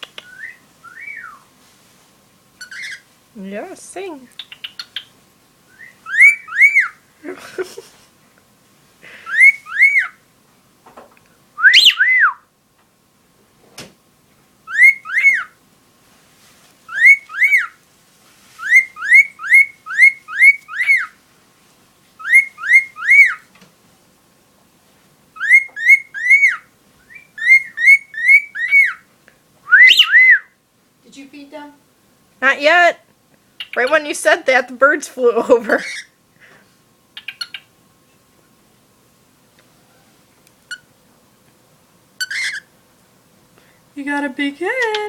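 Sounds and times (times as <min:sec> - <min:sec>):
bird whistling: 0:00.1 - 0:01.5, 0:05.7 - 0:07.0, 0:09.3 - 0:10.2, 0:11.6 - 0:12.4, 0:14.7 - 0:15.6, 0:16.9 - 0:17.8, 0:18.6 - 0:21.1, 0:22.2 - 0:23.4, 0:25.4 - 0:29.0, 0:29.7 - 0:30.6.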